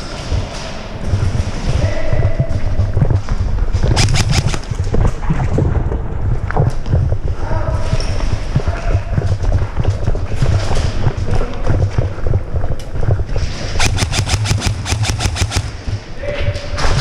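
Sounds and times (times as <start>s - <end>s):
running footsteps: 0.0s - 16.2s
airsoft gun full auto fire: 4.0s - 4.6s, 13.8s - 15.8s.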